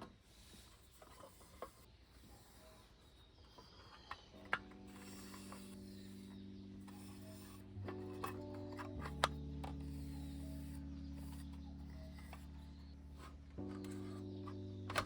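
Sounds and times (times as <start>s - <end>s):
soft background music: 0.4s - 15.0s.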